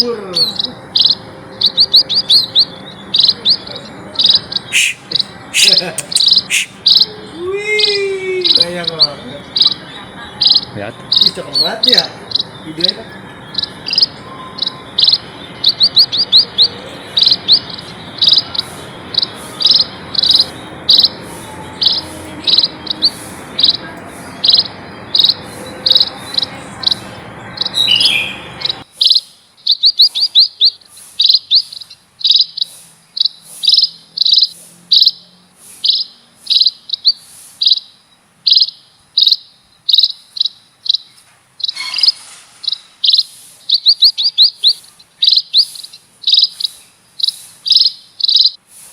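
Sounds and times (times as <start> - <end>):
birds chirping: 0.0 - 48.9.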